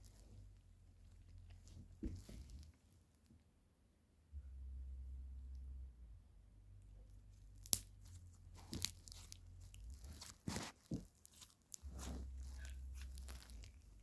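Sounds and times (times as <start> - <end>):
slime crunching and crackling: 7.5 - 14.0.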